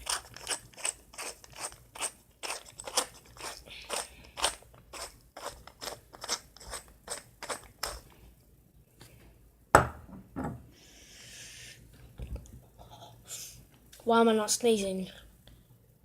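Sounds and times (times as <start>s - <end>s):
pepper grinder crunching: 0.0s - 8.1s.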